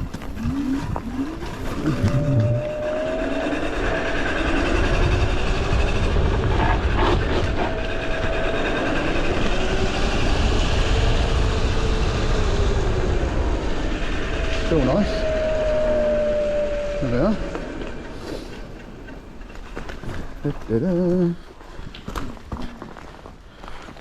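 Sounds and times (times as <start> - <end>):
wavering whine: 0.0 - 21.2
electric scooter rumble: 0.0 - 23.8.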